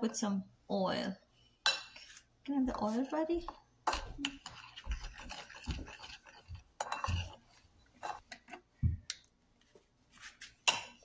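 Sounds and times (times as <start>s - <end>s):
utensils clinking against bowl: 3.8s - 7.4s.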